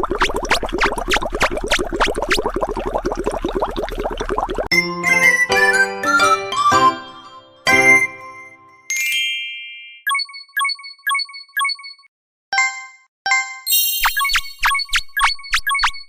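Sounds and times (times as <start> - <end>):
synthesized bell dings and chimes: 6.2 - 14.7.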